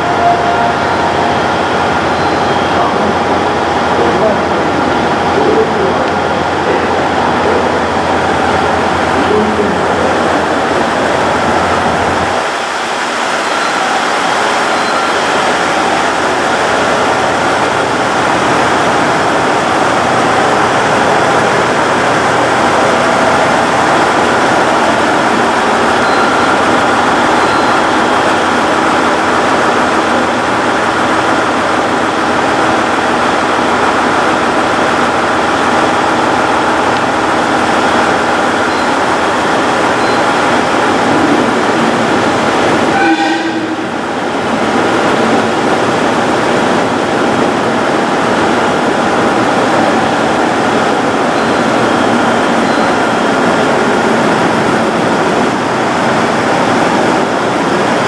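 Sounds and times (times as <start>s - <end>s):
diesel train engines running: 0.0s - 58.0s.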